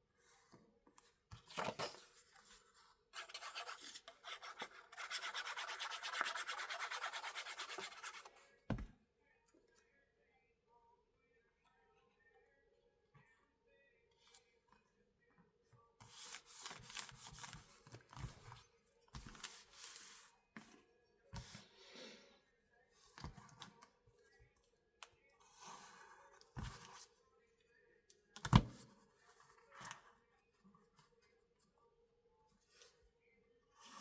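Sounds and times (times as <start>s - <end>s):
tool scraping paper: 3.2s - 8.3s.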